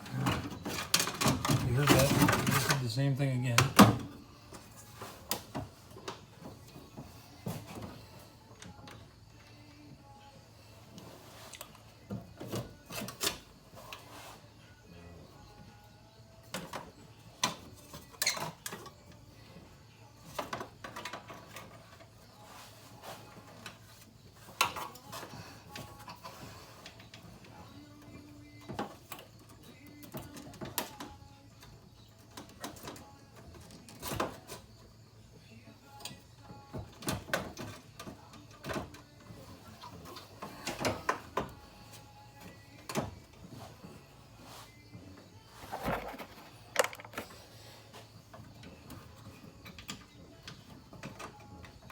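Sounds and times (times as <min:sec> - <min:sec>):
hand tools clicking and clanking: 0:00.0 - 0:06.2, 0:45.6 - 0:47.5
hand tools clicking and knocking: 0:45.7 - 0:47.4.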